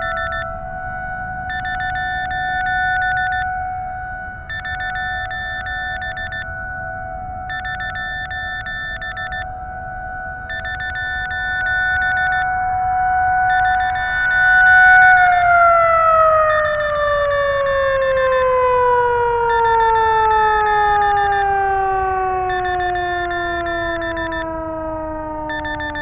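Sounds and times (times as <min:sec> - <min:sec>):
rapid electronic beeping: 0:00.0 - 0:00.5, 0:01.5 - 0:03.4, 0:04.5 - 0:06.5, 0:07.5 - 0:09.5, 0:10.5 - 0:12.4, 0:13.5 - 0:15.7, 0:16.5 - 0:18.5, 0:19.5 - 0:21.5, 0:22.4 - 0:24.5, 0:25.5 - 0:26.0
warning siren tone: 0:00.0 - 0:26.0.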